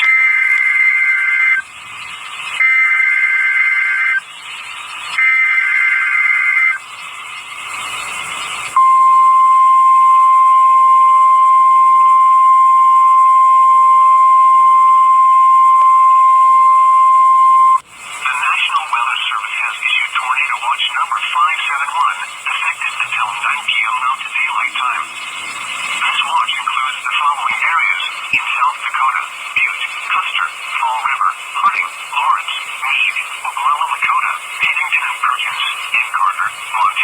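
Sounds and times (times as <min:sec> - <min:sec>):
radio hiss: 0:00.0 - 0:37.0
warbling digital data tones: 0:00.0 - 0:37.0
steady single-pitch alert tone: 0:07.8 - 0:17.8.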